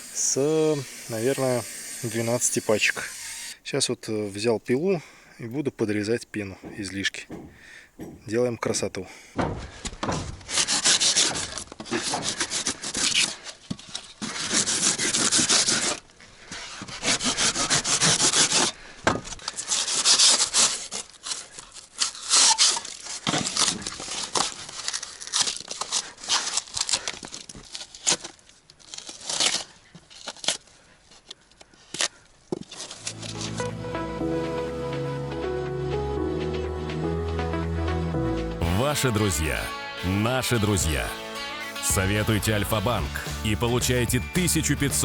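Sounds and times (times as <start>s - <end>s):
hand saw rasping through foam: 0.0s - 3.6s, 10.4s - 18.8s, 19.5s - 24.5s.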